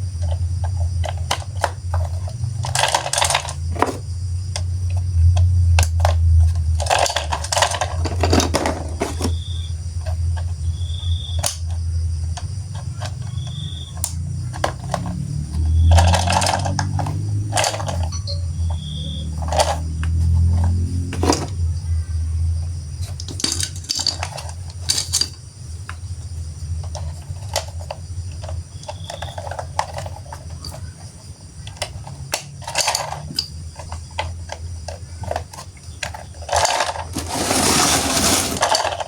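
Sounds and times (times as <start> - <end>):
plastic toy pieces clicking: 0.2 - 9.4, 11.3 - 11.8, 12.4 - 18.2, 19.4 - 21.6, 23.0 - 25.4, 26.8 - 39.0
rustling: 6.9 - 10.2, 35.3 - 39.0
short high tone: 18.1 - 19.1.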